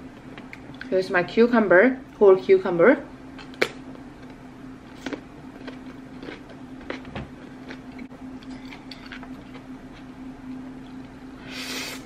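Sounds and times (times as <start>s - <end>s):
crunchy chewing: 3.4s - 10.1s.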